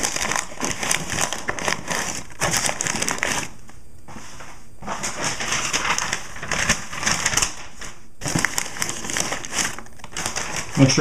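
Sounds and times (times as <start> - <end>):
packing material crinkling: 0.0 - 3.8, 4.8 - 11.0.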